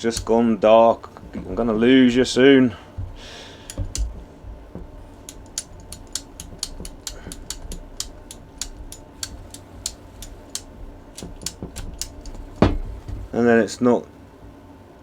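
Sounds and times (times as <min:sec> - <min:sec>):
cable cutter ratchet clicks: 0:00.0 - 0:00.4, 0:03.6 - 0:04.2, 0:05.2 - 0:12.5.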